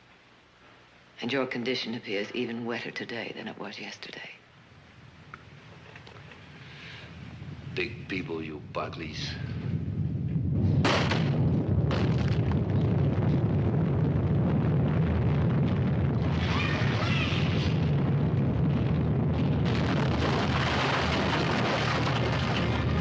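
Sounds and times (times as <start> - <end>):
deep rumble: 4.8 - 23.0
harsh crashing noise: 10.7 - 23.0.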